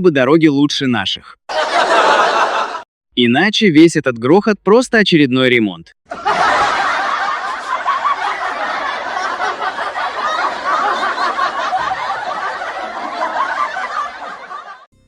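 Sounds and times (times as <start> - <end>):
crowd laughing: 1.5 - 2.9, 6.1 - 14.9.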